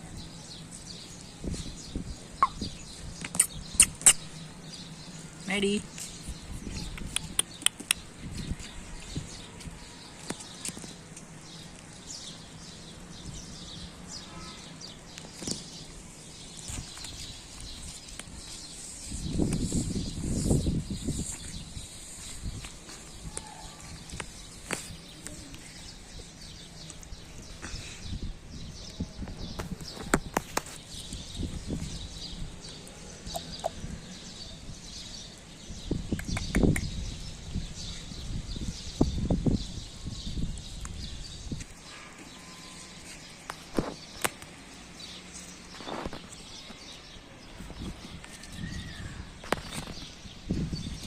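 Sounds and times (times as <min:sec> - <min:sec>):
small birds chirping: 0:00.0 - 0:51.0
sharp clicks: 0:36.1 - 0:36.9.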